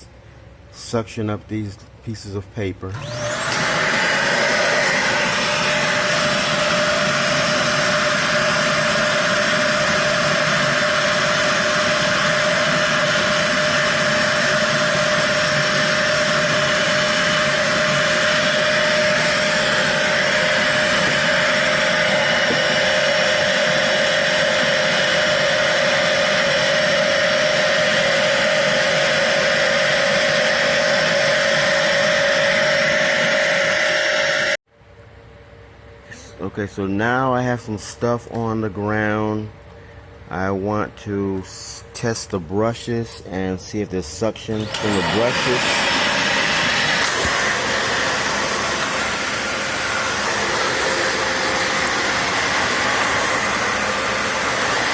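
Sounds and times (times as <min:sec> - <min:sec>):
upright vacuum cleaner running: 0:02.9 - 0:34.6, 0:44.5 - 0:54.9.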